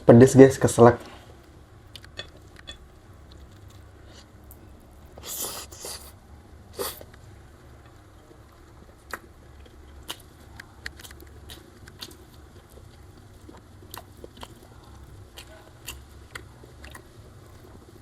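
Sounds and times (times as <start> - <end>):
soft chewing and mouth clicks: 6.8 - 18.0.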